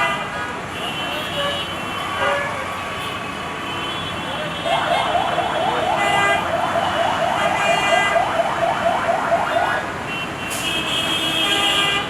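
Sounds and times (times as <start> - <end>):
road traffic noise: 0.0 - 12.0
vehicle siren yelping: 4.6 - 9.9.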